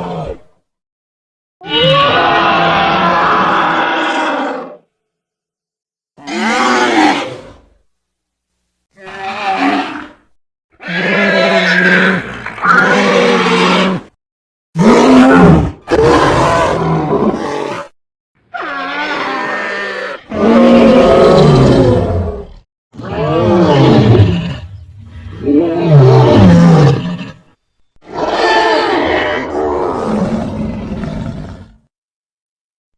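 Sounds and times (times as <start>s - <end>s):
monster roars: 10.8s - 14.2s, 14.8s - 17.9s, 18.5s - 27.3s, 28.0s - 31.8s.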